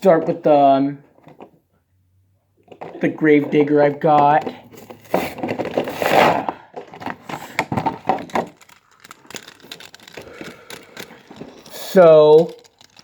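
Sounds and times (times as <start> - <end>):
packaging crackling: 4.9 - 13.0.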